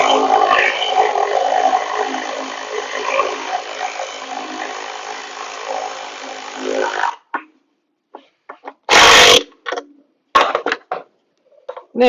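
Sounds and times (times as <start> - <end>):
power ratchet running: 0.0 - 7.2, 8.9 - 9.5.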